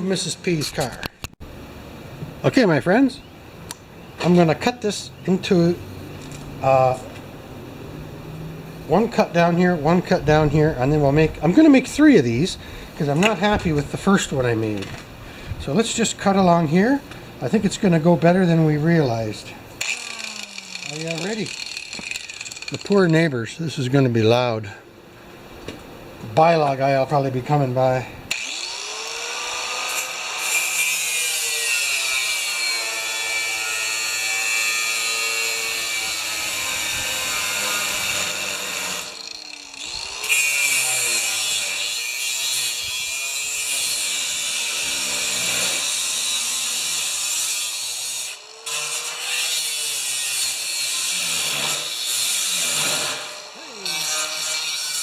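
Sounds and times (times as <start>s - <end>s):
angle grinder cutting metal: 19.8s - 23.2s, 28.3s - 55.0s.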